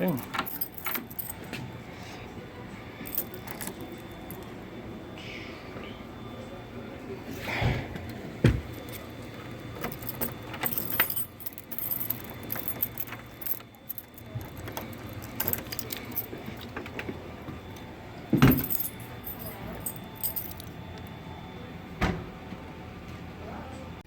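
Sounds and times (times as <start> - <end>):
keys and metal parts clinking: 0.0 - 1.7, 2.9 - 4.5, 8.0 - 21.2.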